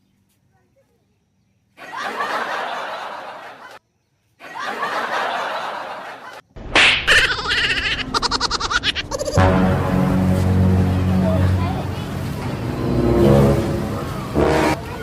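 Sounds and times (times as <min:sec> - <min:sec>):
laughing sound effect: 0:04.4 - 0:10.6
loud patterned sound: 0:09.4 - 0:15.0.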